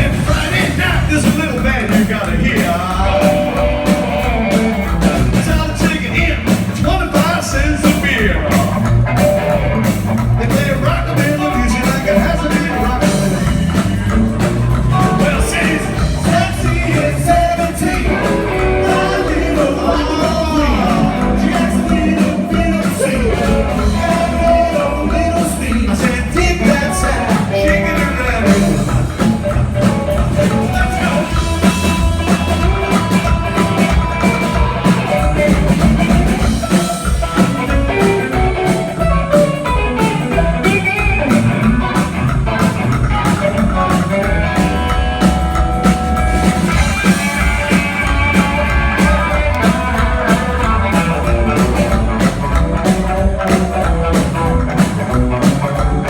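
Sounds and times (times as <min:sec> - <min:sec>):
person singing: 0:00.0 - 0:08.9, 0:09.7 - 0:13.8, 0:14.7 - 0:42.1
drums: 0:00.0 - 0:56.0
electric guitar: 0:00.0 - 0:56.0
upright bass: 0:00.0 - 0:56.0.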